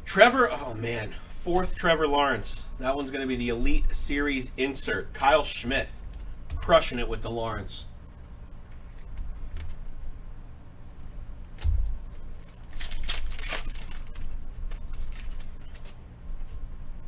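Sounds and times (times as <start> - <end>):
cards sliding and rustling: 8.2 - 10.0, 11.0 - 16.6.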